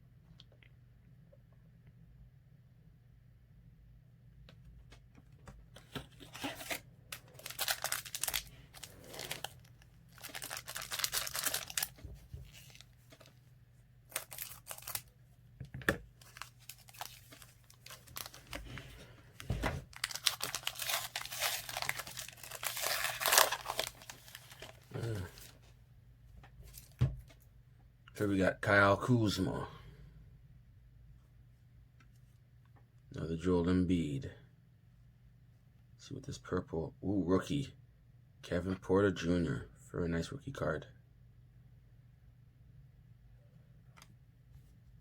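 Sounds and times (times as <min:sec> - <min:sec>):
wrapper tearing and crinkling: 0:06.1 - 0:12.9, 0:14.1 - 0:15.1, 0:16.2 - 0:18.8, 0:19.8 - 0:25.5.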